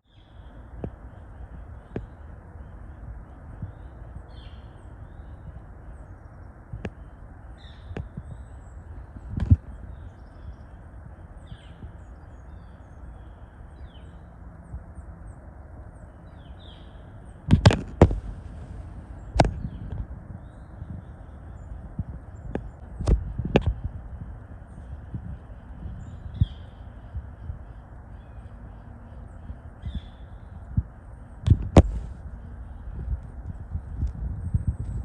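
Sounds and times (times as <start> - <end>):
faint bird chirps: 0.0 - 17.4, 24.5 - 33.2
low rushing noise: 16.9 - 35.0.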